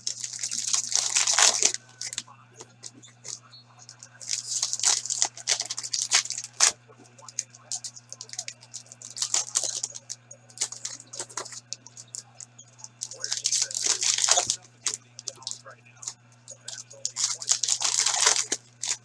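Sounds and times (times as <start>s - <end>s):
card wrapper crinkling and tearing: 0.0s - 2.2s, 4.2s - 6.7s, 7.3s - 11.6s, 13.0s - 15.6s, 16.6s - 19.0s
low electrical hum: 0.0s - 19.0s
sharp little clicks: 0.0s - 19.0s.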